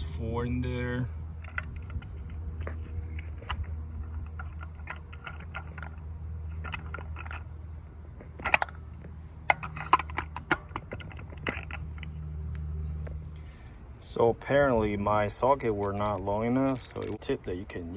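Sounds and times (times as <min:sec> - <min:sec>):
metal socket clinking: 0:01.4 - 0:07.5, 0:08.4 - 0:12.3, 0:15.8 - 0:17.2.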